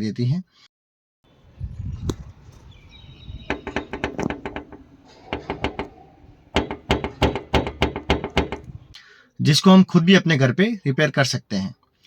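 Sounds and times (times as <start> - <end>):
car bonnet rattling: 3.0 - 9.0.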